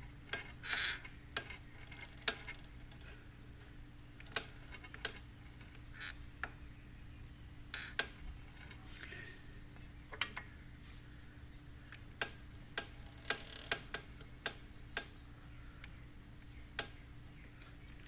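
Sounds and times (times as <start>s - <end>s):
faint steady hum: 0.0s - 18.0s
sharp clicking from belt drive: 16.8s - 17.0s.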